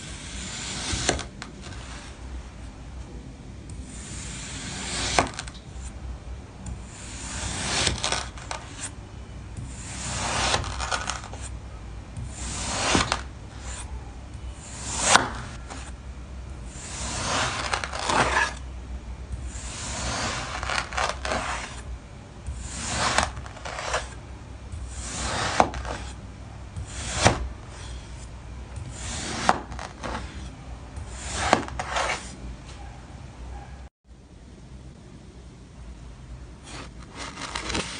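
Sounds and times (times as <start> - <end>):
blade cutting sand: 9.8 - 11.3, 12.3 - 13.8, 16.8 - 18.6, 19.5 - 21.8, 22.6 - 24.2, 24.9 - 26.1.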